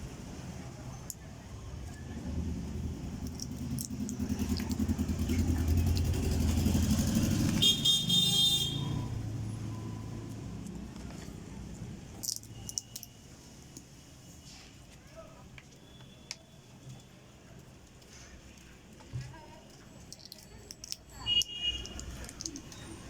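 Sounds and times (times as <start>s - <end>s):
vehicle passing: 2.1s - 10.9s
horn toot: 7.5s - 9.1s.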